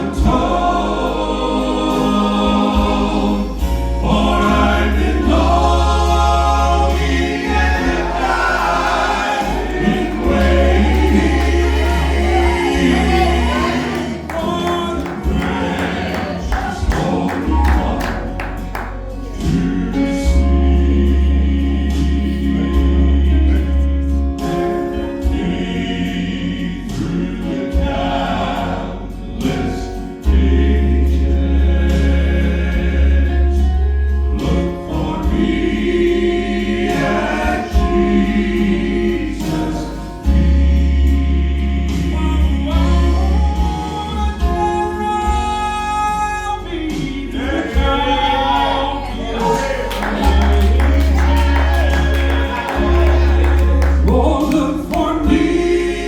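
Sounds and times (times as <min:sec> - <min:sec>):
vocal quartet singing in harmony: 0:00.0 - 0:56.0
low bass voice: 0:07.8 - 0:24.2, 0:47.8 - 0:56.0.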